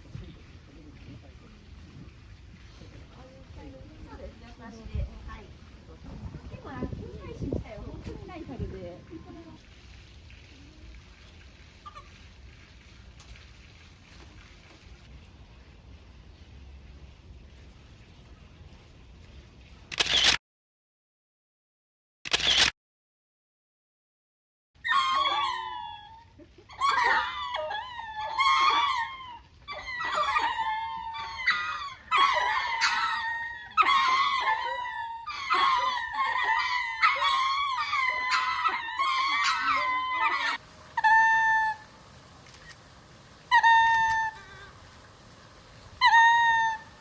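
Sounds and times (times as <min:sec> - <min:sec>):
lemurs wailing calls: 0:24.8 - 0:26.2, 0:26.8 - 0:47.0.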